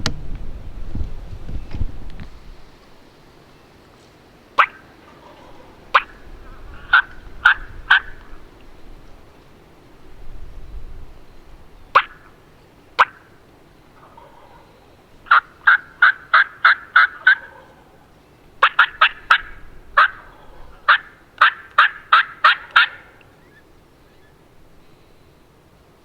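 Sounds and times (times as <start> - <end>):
turkey yelping: 4.6 - 8.8, 11.9 - 24.5.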